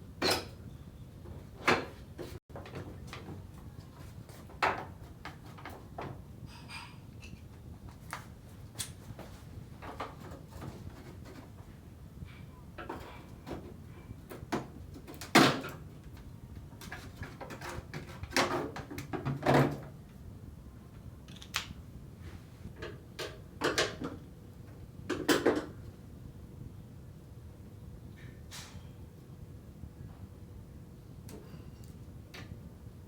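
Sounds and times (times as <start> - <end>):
knocks and clatter of parts: 22.8 - 24.3, 25.1 - 25.8.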